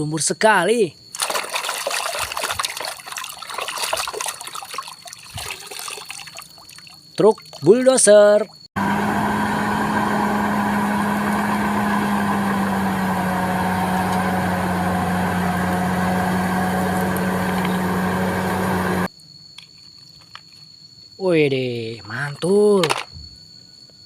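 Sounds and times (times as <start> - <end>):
small motor humming: 8.8 - 19.1.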